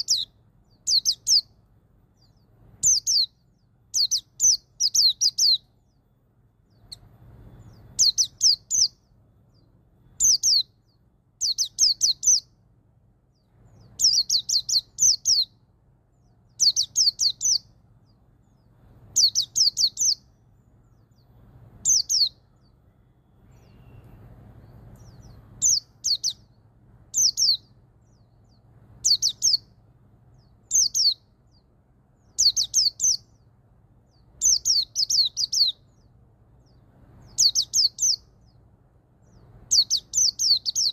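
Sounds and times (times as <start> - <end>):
bird singing high falling notes: 0.0 - 1.6, 2.2 - 12.6, 13.3 - 33.5.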